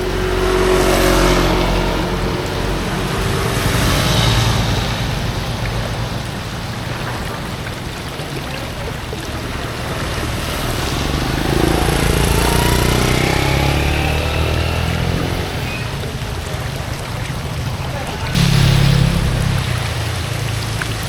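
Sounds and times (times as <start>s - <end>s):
rushing noise: 0.0s - 7.6s, 18.4s - 21.0s
engine-like rumble: 0.0s - 17.3s, 18.3s - 21.0s.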